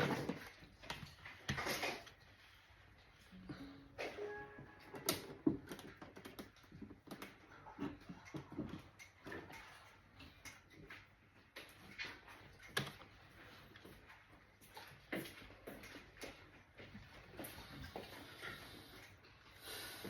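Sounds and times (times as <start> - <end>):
brief tone: 3.4 - 5.5.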